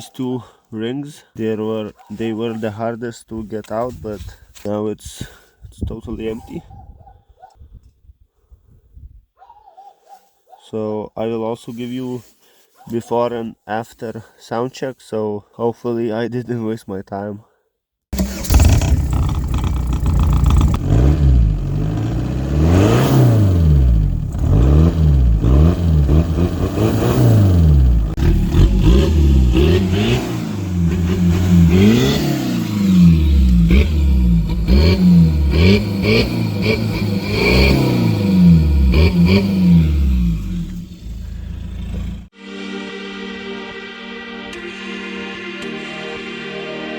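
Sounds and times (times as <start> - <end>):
diesel car engine revving: 18.2 - 42.3.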